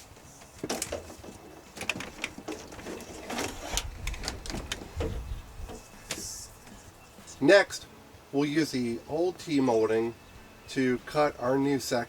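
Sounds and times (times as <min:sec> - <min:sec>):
plastic trim crackling and scraping: 0:00.5 - 0:06.8.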